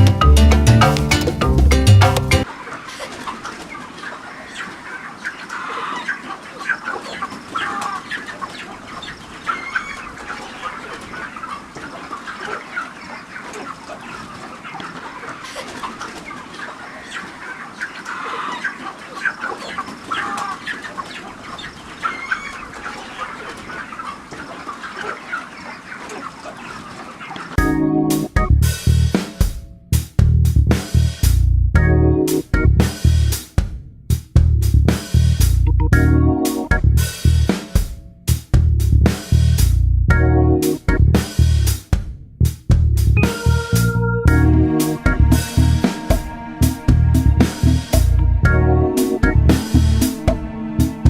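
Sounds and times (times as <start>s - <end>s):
chickens clucking and peeping: 2.4s - 28.3s, 36.3s - 36.8s, 43.2s - 51.0s.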